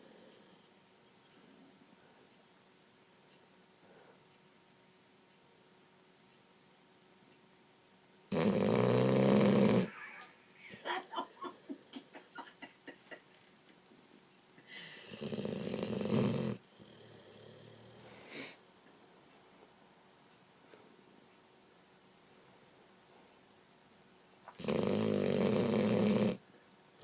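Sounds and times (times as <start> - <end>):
loud snoring: 8.3 - 9.9, 15.0 - 18.6, 24.6 - 26.4
small snort: 8.3 - 9.9, 14.7 - 19.0, 24.5 - 26.4.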